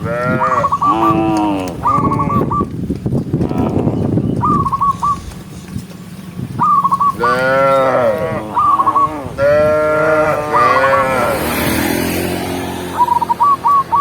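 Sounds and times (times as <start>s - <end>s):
cattle mooing: 0.0s - 2.6s, 7.2s - 11.9s.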